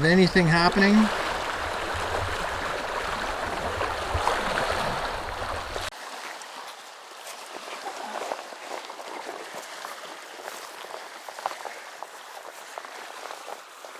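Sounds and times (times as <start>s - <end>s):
water lapping: 0.0s - 5.9s
wind rumbling on microphone: 0.0s - 5.9s.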